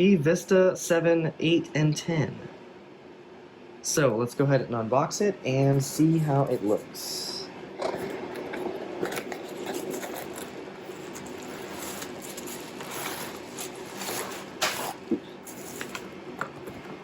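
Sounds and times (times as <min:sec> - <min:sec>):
packaging rustling and scraping: 0:07.8 - 0:17.0.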